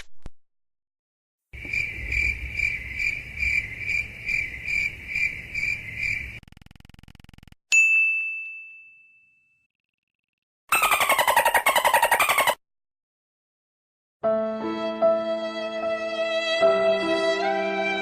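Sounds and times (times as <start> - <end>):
cricket chirping: 1.6 - 6.4
bright ding: 7.7 - 9.6.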